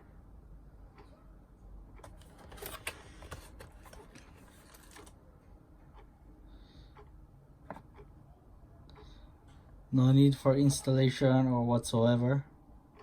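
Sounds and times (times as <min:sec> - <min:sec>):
plastic objects clicking and rustling: 0:02.0 - 0:05.2.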